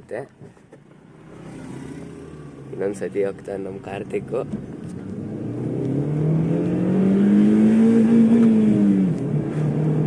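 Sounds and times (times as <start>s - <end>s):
car engine revving hard: 5.0s - 10.0s.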